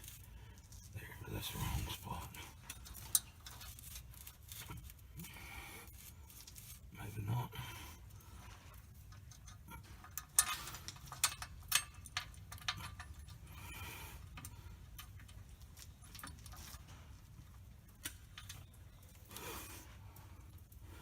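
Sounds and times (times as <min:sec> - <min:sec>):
low steady hum: 0:00.0 - 0:21.0
metallic clicks of hand tools: 0:09.3 - 0:16.6.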